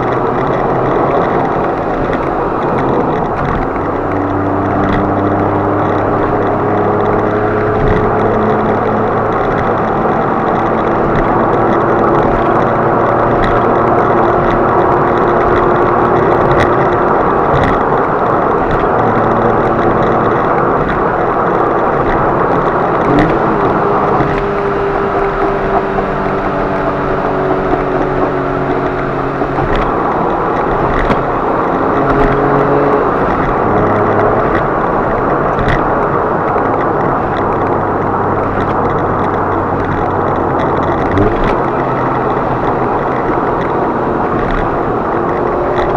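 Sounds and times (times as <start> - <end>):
car engine: 0.0 - 45.9
road noise: 0.0 - 45.9.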